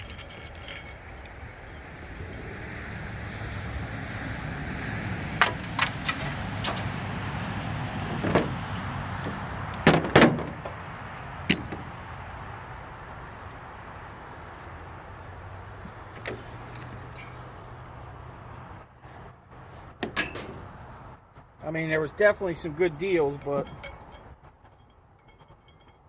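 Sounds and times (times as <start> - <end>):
vehicle passing by: 1.1 - 24.6
sharp knocks: 9.2 - 10.8.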